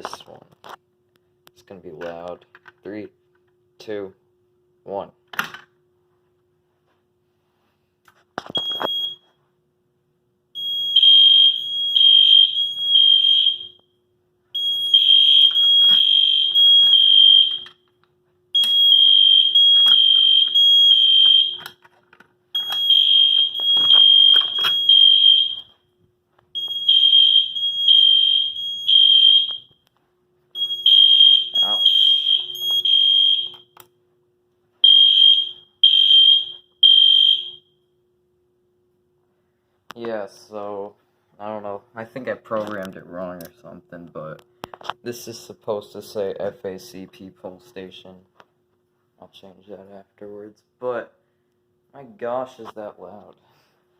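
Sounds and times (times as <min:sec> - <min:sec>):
fire alarm beeping: 0:08.5 - 0:09.4, 0:10.5 - 0:21.8, 0:22.5 - 0:29.9, 0:30.5 - 0:33.9, 0:34.8 - 0:38.0.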